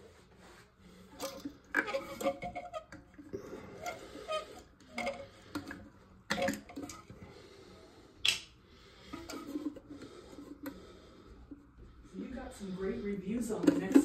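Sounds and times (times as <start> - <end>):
hands clicking on toilet parts: 1.1 - 7.1, 8.2 - 10.8, 13.4 - 14.0.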